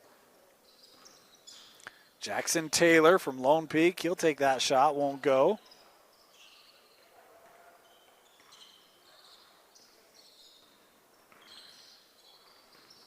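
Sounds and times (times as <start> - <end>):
gym ambience: 0.0 - 13.0
shoes squeaking on hardwood: 10.2 - 13.0.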